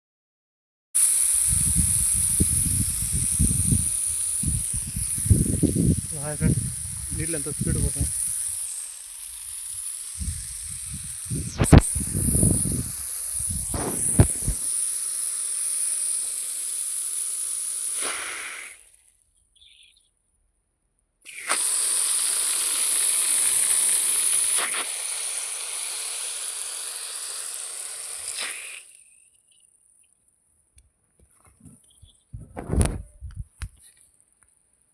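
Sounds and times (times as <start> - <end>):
water rushing under pressure: 1.0 - 18.8, 21.3 - 28.9.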